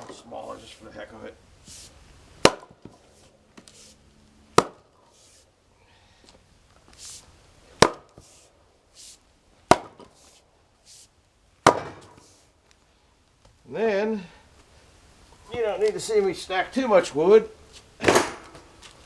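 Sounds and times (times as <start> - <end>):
chopping blows into wood: 2.4 - 3.0, 4.5 - 5.0, 7.8 - 8.3, 9.7 - 10.2, 11.6 - 12.4, 18.0 - 18.7.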